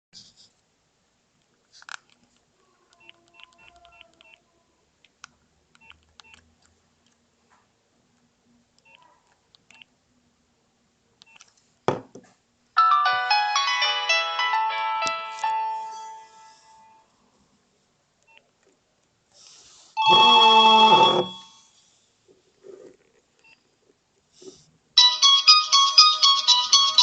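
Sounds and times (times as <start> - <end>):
polyphonic ringtone melody: 12.8 - 17.0, 20.0 - 21.5, 25.0 - 27.0
short high beeps: 20.0 - 21.5.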